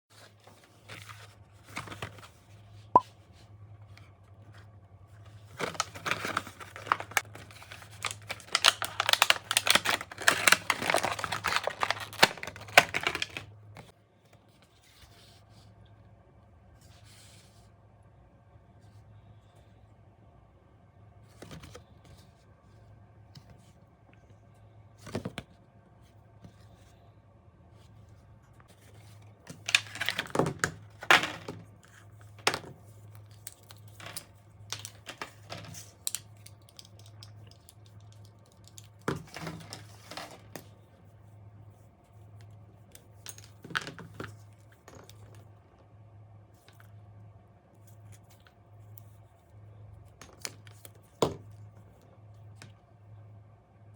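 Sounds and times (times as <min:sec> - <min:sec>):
faint low hum: 0:00.1 - 0:53.9
packaging handling noises: 0:05.3 - 0:13.6, 0:28.7 - 0:40.7.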